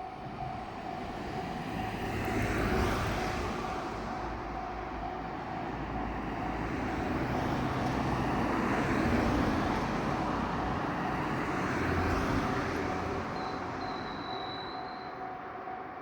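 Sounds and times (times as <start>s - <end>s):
crossing alarm steady tone: 0.0s - 16.0s
train rumbling past: 0.0s - 16.0s
train wheel squeal: 12.5s - 15.4s.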